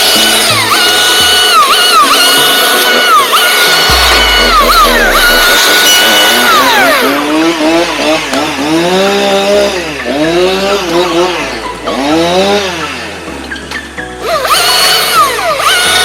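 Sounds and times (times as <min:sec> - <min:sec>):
chainsaw revving: 0:00.0 - 0:12.9
electronic music: 0:03.9 - 0:07.2.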